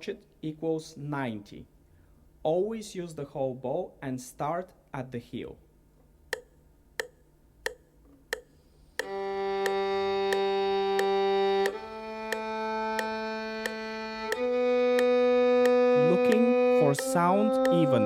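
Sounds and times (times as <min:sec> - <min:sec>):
metronome ticking: 0:06.3 - 0:18.0
violin playing slow scale: 0:09.0 - 0:18.0.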